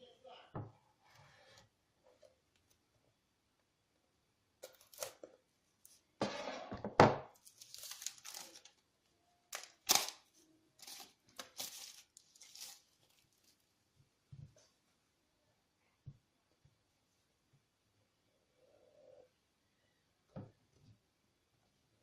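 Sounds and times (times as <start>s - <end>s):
packaging rustling and crinkling: 7.4s - 8.8s, 9.5s - 13.7s
packaging tearing: 7.4s - 8.8s, 9.5s - 13.6s.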